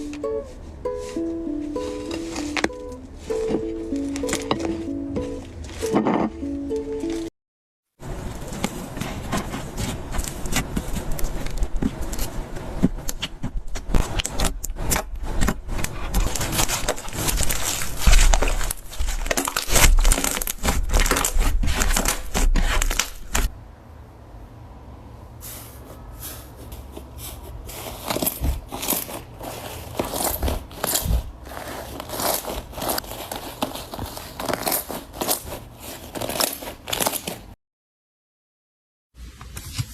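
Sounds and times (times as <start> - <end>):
slime crackling and popping: 13.0 - 23.5, 28.0 - 37.5.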